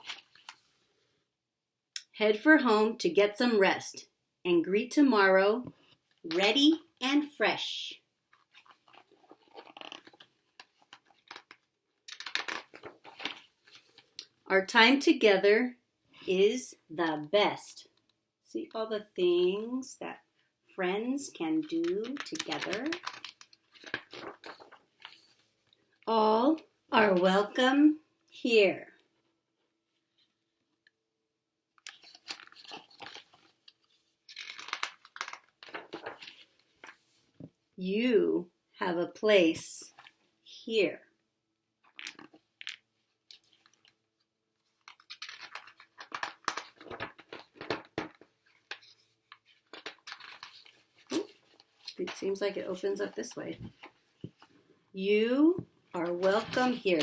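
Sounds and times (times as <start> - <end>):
book pages rustling: 0.0 - 0.8, 8.3 - 14.2, 21.6 - 25.8, 31.8 - 37.6, 41.8 - 44.0, 44.6 - 54.7, 55.6 - 57.0.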